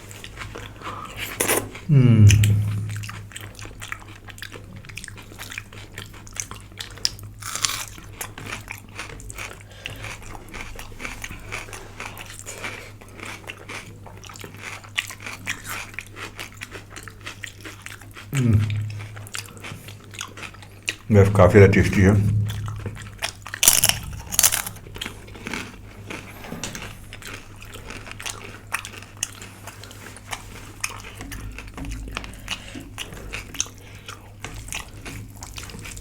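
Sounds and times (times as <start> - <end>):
person chewing food: 0.0 - 21.2, 22.0 - 36.0
crunchy bites: 7.4 - 8.0, 23.5 - 24.8
mouth clicks: 18.3 - 19.3.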